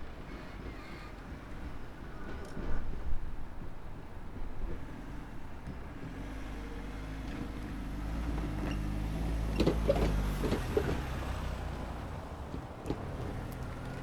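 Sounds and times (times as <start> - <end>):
vehicle engine hum: 3.5 - 14.0.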